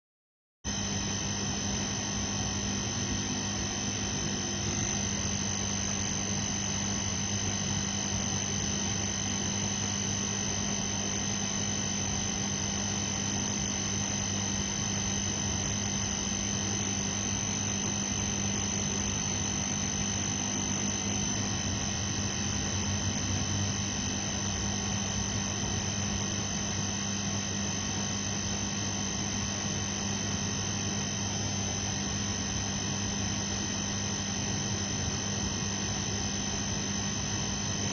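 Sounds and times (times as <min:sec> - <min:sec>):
fluorescent light buzzing: 0:00.7 - 0:37.9.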